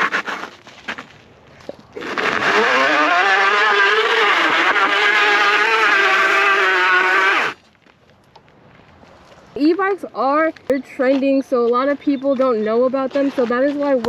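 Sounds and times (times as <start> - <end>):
vehicle motor revving: 2.0 - 7.6.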